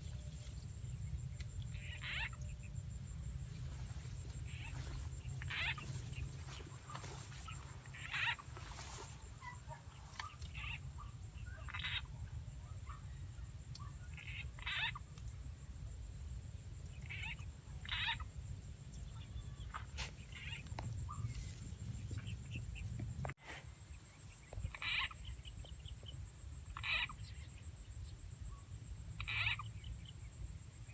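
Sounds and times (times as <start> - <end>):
frog croaks: 1.0 - 2.5, 3.6 - 10.8, 11.6 - 12.0, 14.1 - 15.0, 17.0 - 18.3, 24.7 - 25.3, 26.6 - 27.6, 29.2 - 29.7.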